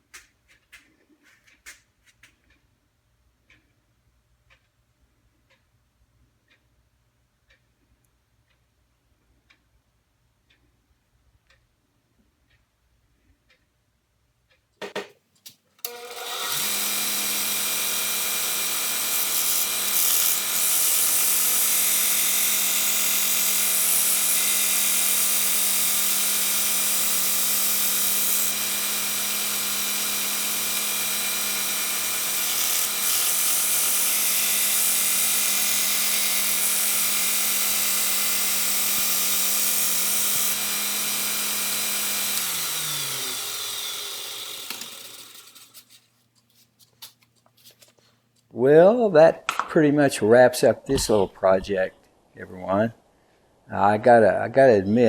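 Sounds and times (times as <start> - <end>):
belt grinder running: 15.8 - 46.0.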